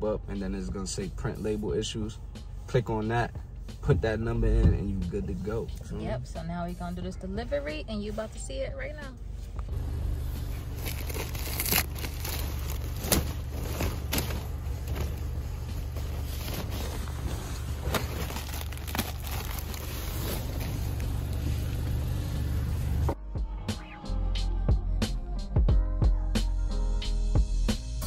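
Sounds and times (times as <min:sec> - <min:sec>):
car road rumble: 0:01.8 - 0:23.2.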